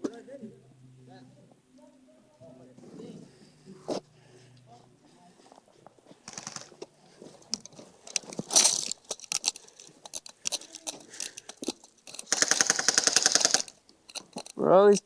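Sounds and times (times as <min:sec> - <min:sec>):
airsoft gun full-auto burst: 0:12.3 - 0:13.7.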